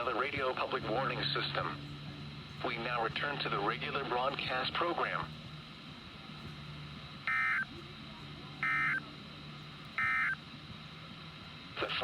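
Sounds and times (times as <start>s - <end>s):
faint hum and hiss: 0.0s - 12.0s
warbling digital tone bursts: 7.3s - 7.6s, 8.6s - 9.0s, 10.0s - 10.4s.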